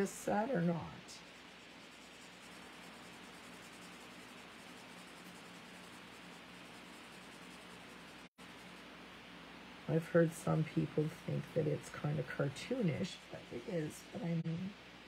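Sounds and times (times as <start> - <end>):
steady hiss: 0.0 - 12.0
marker scratching on cardstock: 1.2 - 8.8.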